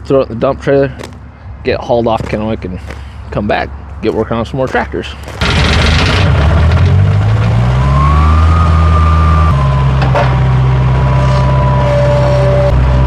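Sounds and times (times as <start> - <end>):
skid steer engine running: 5.2 - 13.0.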